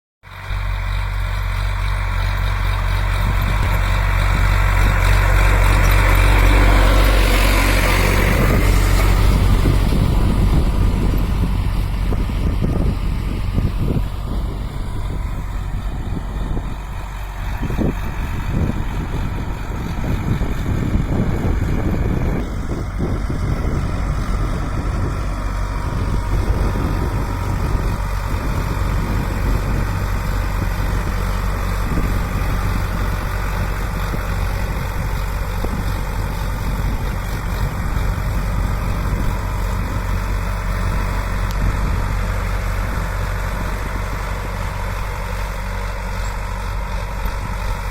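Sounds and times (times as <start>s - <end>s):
tractor diesel engine running: 0.2s - 47.9s.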